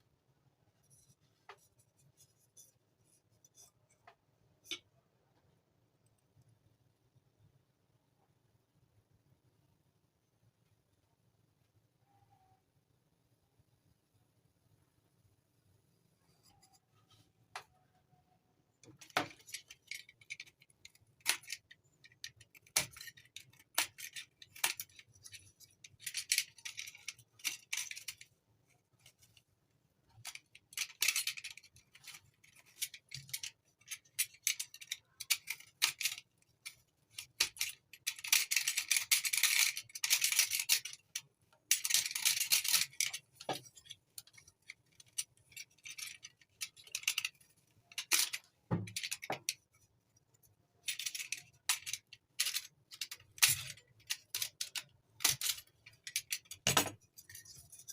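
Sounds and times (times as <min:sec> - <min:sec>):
small hard parts rattling: 0:18.8 - 0:57.9.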